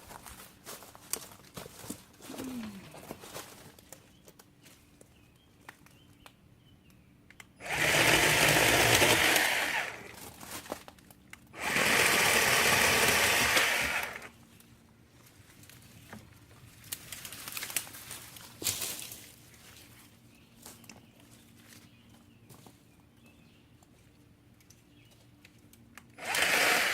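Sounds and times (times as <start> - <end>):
electric chainsaw running: 7.6 - 10.1, 11.6 - 14.3, 26.2 - 26.9.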